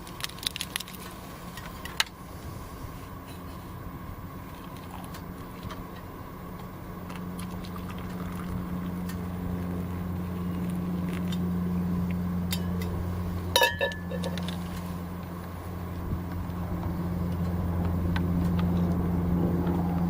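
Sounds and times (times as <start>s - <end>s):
steady low hum: 0.0s - 20.0s
sharp ringing clink: 12.5s - 12.9s, 13.5s - 14.4s.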